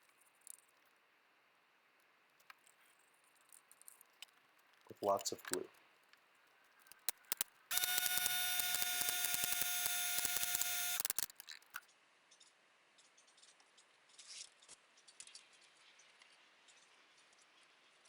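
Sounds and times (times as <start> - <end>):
parts clicking and tapping: 4.9 - 5.7, 6.8 - 11.8
power tool motor running: 7.1 - 11.6.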